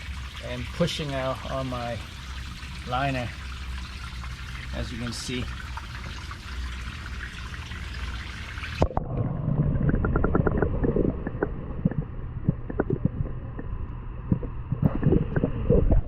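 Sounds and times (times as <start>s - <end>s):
pond water trickling: 0.0s - 8.9s
muffled underwater gurgling: 8.8s - 16.0s.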